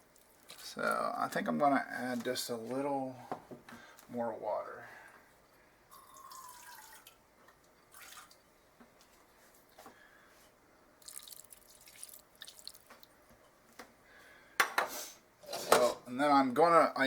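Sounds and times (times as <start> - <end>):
water drips and splashes: 0.0 - 1.0, 6.0 - 7.2, 7.9 - 8.5, 11.0 - 13.2
water trickling into a pan: 0.0 - 1.1, 5.9 - 8.5, 11.0 - 13.2.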